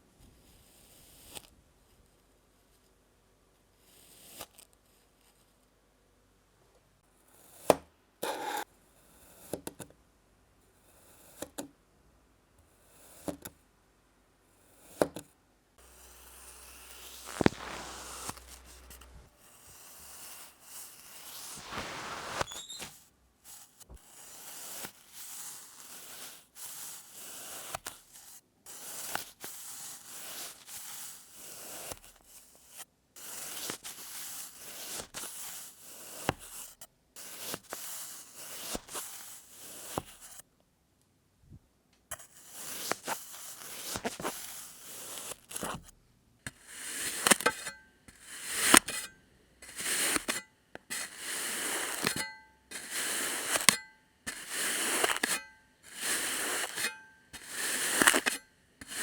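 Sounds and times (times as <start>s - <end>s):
blade cutting kinetic sand: 0.7s - 1.5s, 3.9s - 4.6s, 7.3s - 9.7s, 15.8s - 40.4s, 42.1s - 45.9s, 46.5s - 59.0s.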